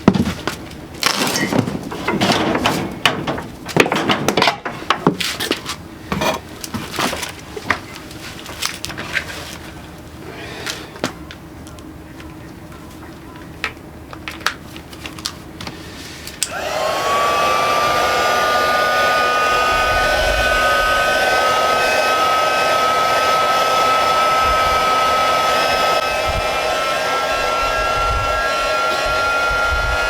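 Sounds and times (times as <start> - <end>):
small electric motor whining: 16.5 - 30.0.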